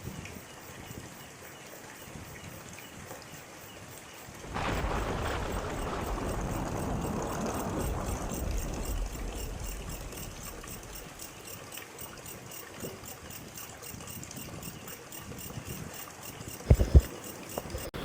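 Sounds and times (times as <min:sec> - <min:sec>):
steady rain falling: 0:02.8 - 0:15.1, 0:16.0 - 0:18.0
river rushing: 0:04.4 - 0:11.4
low rumble: 0:04.6 - 0:11.3.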